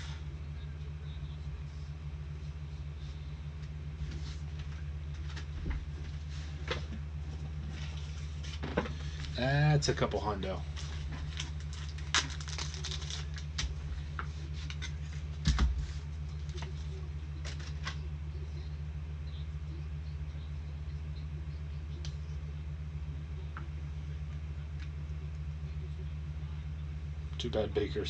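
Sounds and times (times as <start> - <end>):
low electrical hum: 0.0 - 28.0
cards and packaging rustling: 10.7 - 15.8, 16.4 - 18.0.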